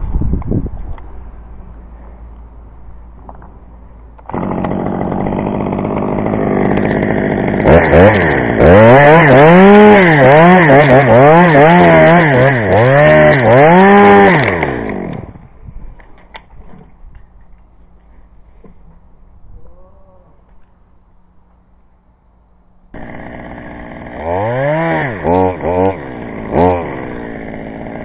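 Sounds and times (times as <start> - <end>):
chainsaw engine revving: 4.2 - 15.4, 23.0 - 28.0.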